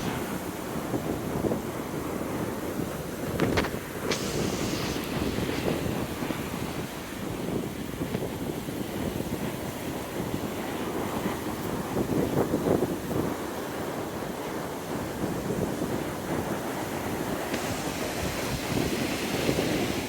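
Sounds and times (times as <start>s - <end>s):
wind buffeting microphone: 0.0s - 20.0s.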